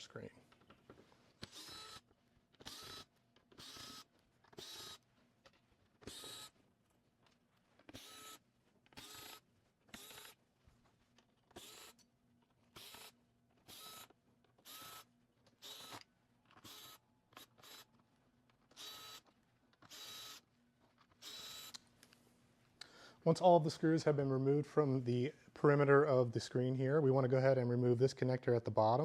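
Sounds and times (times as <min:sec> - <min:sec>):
powered screwdriver whirring: 0:01.4 - 0:05.0, 0:06.0 - 0:06.6, 0:07.8 - 0:10.4, 0:11.5 - 0:12.0, 0:12.7 - 0:18.0, 0:18.7 - 0:20.4, 0:21.1 - 0:21.8.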